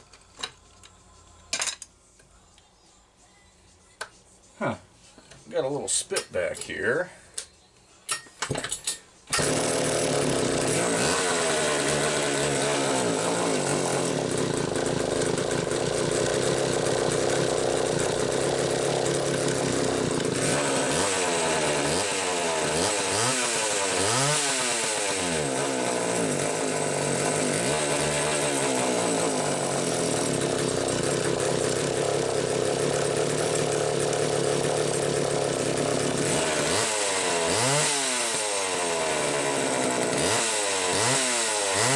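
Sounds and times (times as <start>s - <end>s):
chainsaw running: 9.3s - 41.9s
chainsaw throttle blips: 9.3s - 41.9s.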